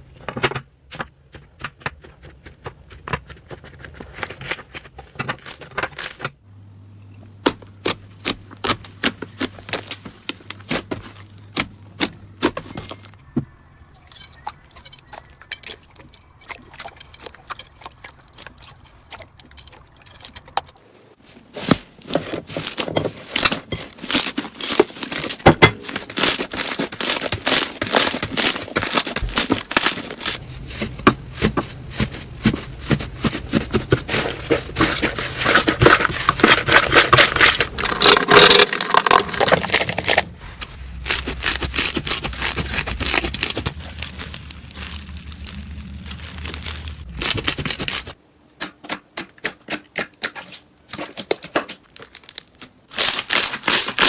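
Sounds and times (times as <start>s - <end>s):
slime crackling and popping: 26.2s - 48.2s.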